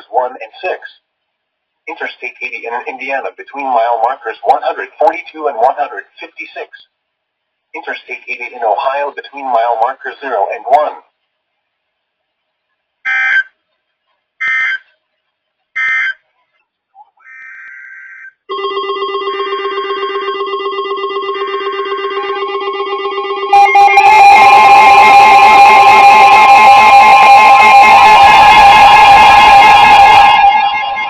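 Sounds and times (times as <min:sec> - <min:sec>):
emergency alert data tones: 0:18.5 - 0:31.0
harsh alarm tone: 0:18.5 - 0:31.0
weather radio pulsing alarm beeps: 0:18.5 - 0:31.0.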